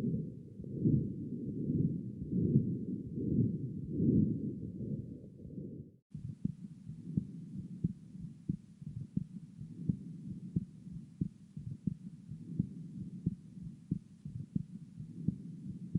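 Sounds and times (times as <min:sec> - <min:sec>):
heartbeat thumps: 0:00.0 - 0:04.5, 0:06.1 - 0:15.9
steady low rumble: 0:00.0 - 0:15.9.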